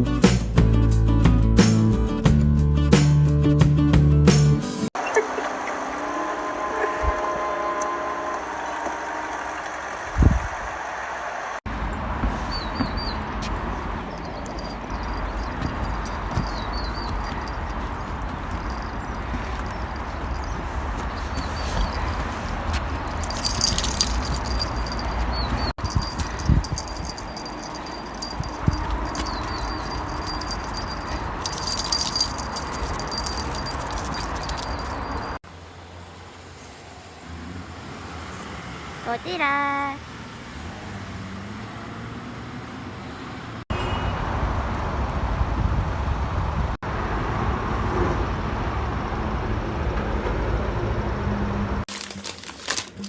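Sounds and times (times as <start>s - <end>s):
road traffic rumble: 5.0s - 53.0s
dog collar tags jingling: 12.8s - 35.4s, 51.9s - 53.0s
clicks and rustling: 13.5s - 35.4s, 51.9s - 53.0s.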